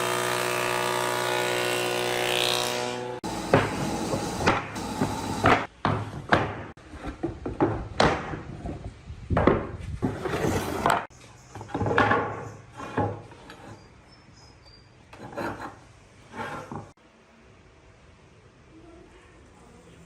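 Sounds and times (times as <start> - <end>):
wood knocking and scraping on wood: 3.5 - 13.8, 15.1 - 17.0.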